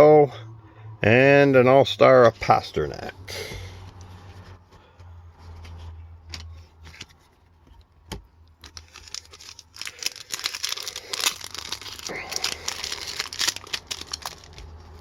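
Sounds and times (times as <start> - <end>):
cards rustling: 8.6 - 15.0.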